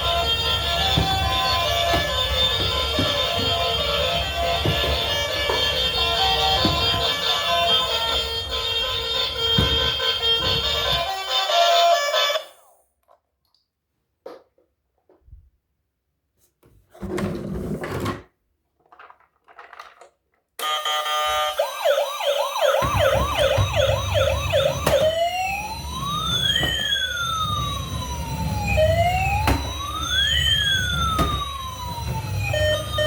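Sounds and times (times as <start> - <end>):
handling noises: 0.0 - 11.1
toy electronic siren: 0.0 - 12.6, 20.6 - 33.0.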